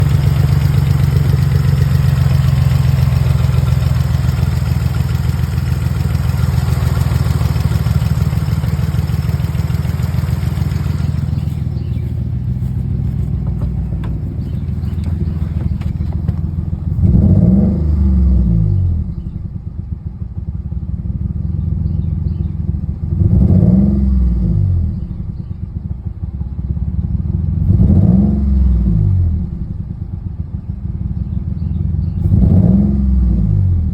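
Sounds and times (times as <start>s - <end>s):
engine throttle blips: 0.0s - 19.8s
car engine idling: 0.0s - 23.2s, 24.8s - 27.7s.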